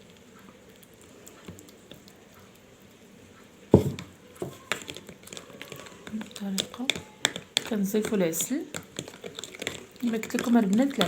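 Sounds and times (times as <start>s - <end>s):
sharp knock: 3.8s - 4.0s
spoon stirring in a jar: 3.8s - 11.0s.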